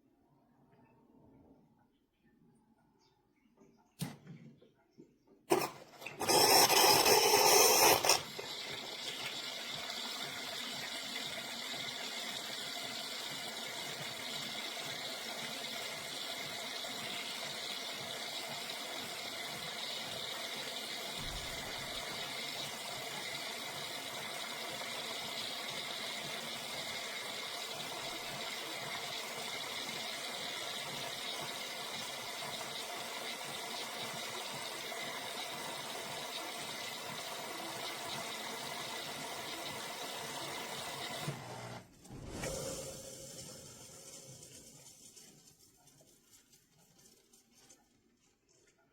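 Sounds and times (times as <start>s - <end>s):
espresso machine running: 5.5s - 9.1s, 16.7s - 41.9s.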